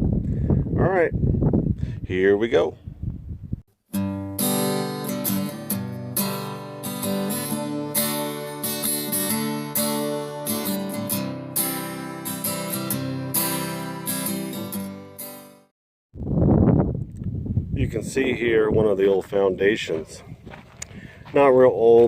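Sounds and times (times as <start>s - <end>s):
acoustic guitar strumming: 3.9s - 15.7s.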